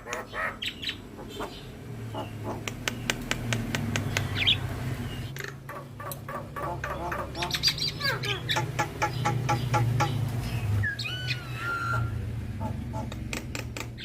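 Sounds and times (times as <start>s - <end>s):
bird calling with clicking notes: 0.0s - 4.6s, 5.2s - 14.0s
bird squawk-like whistle: 10.9s - 12.2s.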